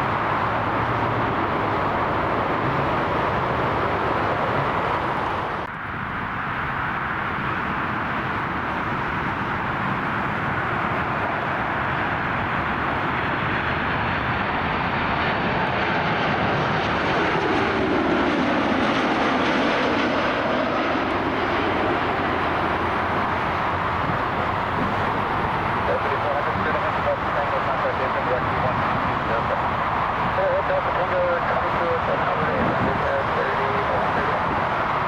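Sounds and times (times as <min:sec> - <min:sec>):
jet engines roaring: 0:00.0 - 0:35.0.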